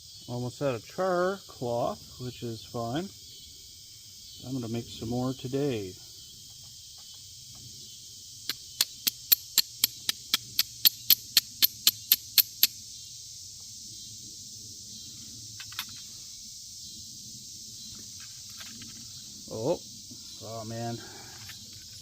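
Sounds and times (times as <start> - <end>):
steel striker scraping flint: 8.8 - 12.7, 21.3 - 22.0.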